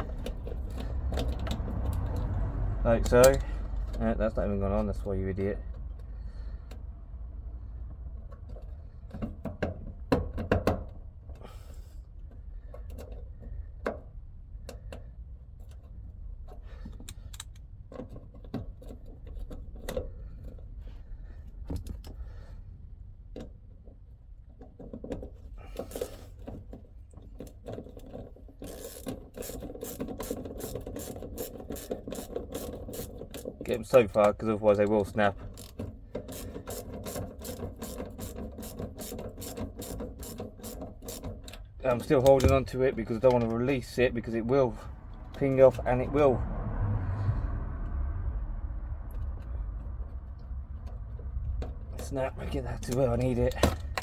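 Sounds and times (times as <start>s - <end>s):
ratchet spanner clicking: 0.0s - 2.4s, 3.0s - 5.0s, 27.4s - 43.5s
tools and bolts clicking: 3.0s - 4.0s, 24.6s - 43.7s.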